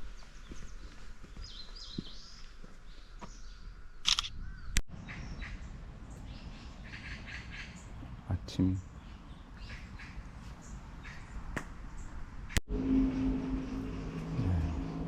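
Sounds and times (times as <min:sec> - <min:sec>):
small birds chirping: 0:00.0 - 0:12.6
sharp click: 0:04.0 - 0:04.3
low outdoor rumble: 0:10.2 - 0:15.0.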